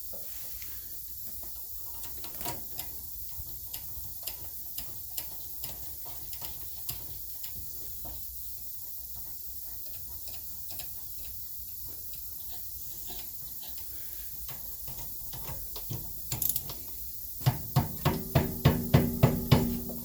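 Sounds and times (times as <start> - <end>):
ratchet wrench clicking: 12.1 - 16.9.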